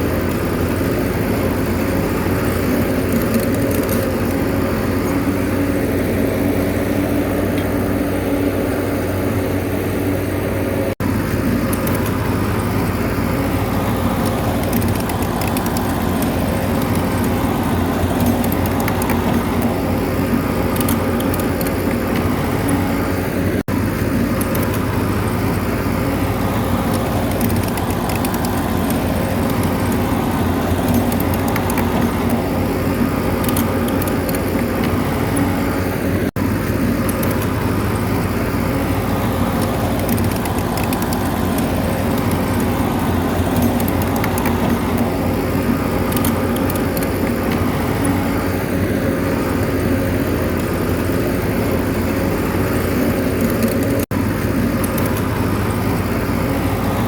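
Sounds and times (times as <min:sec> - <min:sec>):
bulldozer diesel engine running: 0:00.0 - 0:57.0
faint machine clicking: 0:11.4 - 0:23.1, 0:24.2 - 0:35.8, 0:36.8 - 0:48.8.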